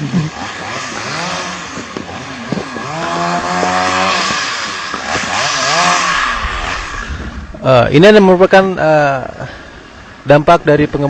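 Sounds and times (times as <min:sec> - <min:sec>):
vehicle engine revving: 0:00.0 - 0:10.2.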